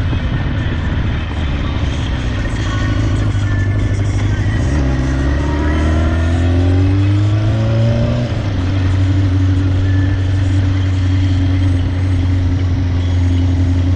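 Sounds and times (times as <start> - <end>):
vehicle engine speeding up: 2.0 - 11.0.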